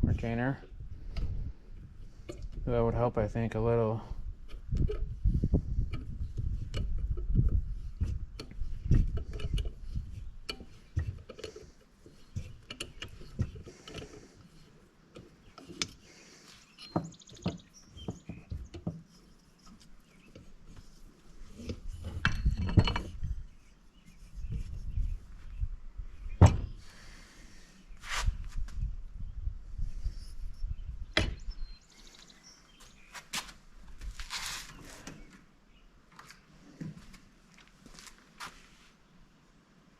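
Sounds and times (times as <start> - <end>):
metal parts clicking and knocking: 8.4 - 16.0.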